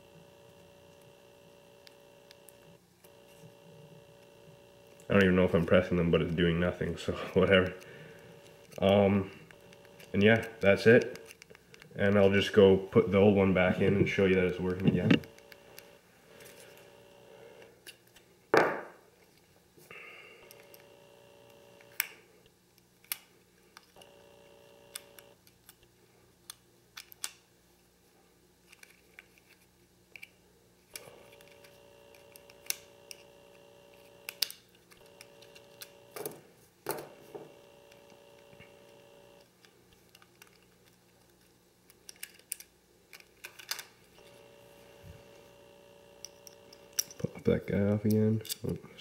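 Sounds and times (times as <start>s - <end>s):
plastic phone parts clicking: 9.5s - 12.2s, 26.5s - 27.4s, 31.2s - 36.3s, 37.9s - 43.9s.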